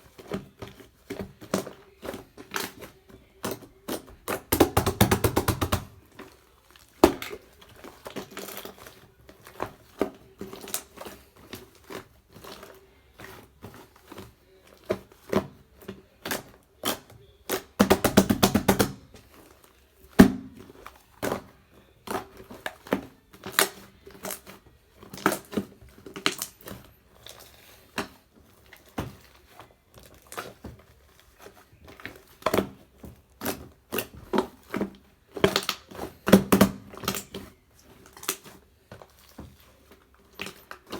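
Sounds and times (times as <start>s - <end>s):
slime squishing by hand: 0.0s - 40.9s
loud slime pop: 4.4s - 6.0s.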